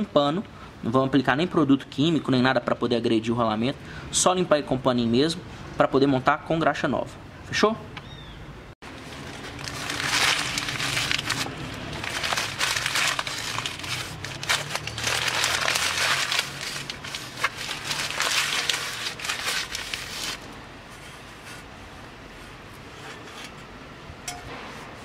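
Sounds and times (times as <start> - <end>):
rag scrubbing metal parts: 9.0 - 21.7, 22.4 - 23.7.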